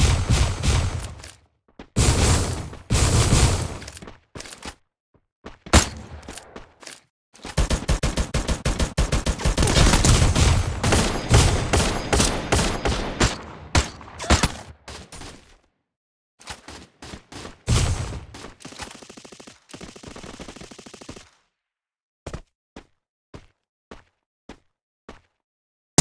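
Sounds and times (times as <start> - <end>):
rapid sharp bangs: 0.0 - 1.4, 2.0 - 4.0, 7.6 - 14.5.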